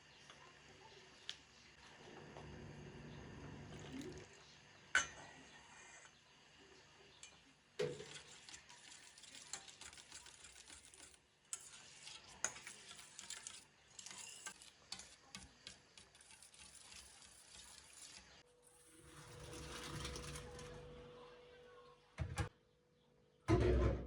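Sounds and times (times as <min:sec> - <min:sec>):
utensil stirring in pan: 0:05.0 - 0:20.6.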